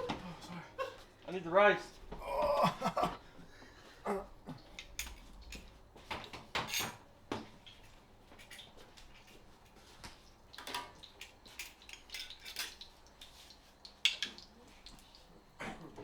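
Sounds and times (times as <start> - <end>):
utensils and dishes clinking: 4.7 - 9.4, 10.6 - 12.9.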